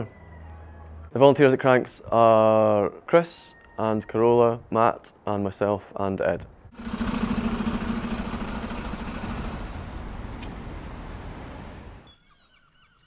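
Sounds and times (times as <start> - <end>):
vehicle engine humming: 6.7 - 12.1.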